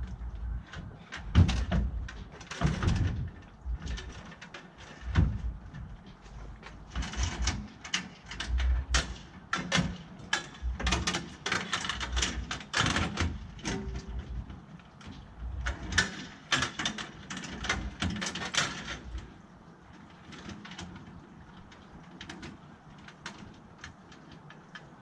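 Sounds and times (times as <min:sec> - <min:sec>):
pull-starter knocks and clatter: 0:00.7 - 0:05.9.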